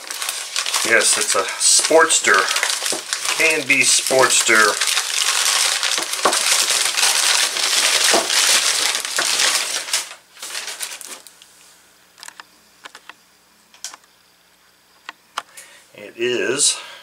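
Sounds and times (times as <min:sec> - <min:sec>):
packaging crinkling and rustling: 0:00.0 - 0:11.5.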